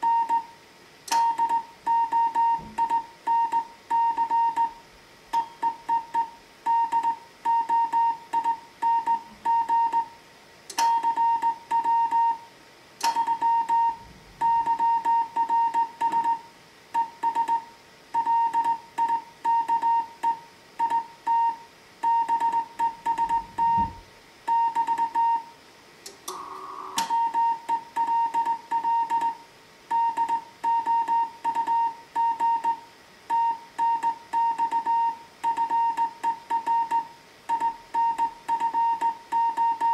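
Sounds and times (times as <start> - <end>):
morse code tone: 10.8 - 12.4, 13.0 - 25.5, 26.3 - 39.9.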